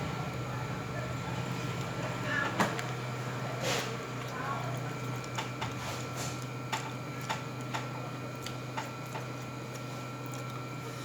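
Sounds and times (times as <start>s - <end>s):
low electrical hum: 0.0s - 11.0s
mouth smacking while chewing: 3.7s - 11.0s.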